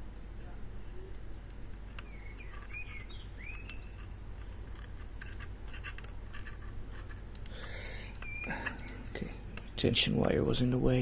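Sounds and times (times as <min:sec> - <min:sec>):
steady low hum: 0:00.0 - 0:11.0
bird chirping: 0:01.9 - 0:04.9, 0:07.8 - 0:10.1.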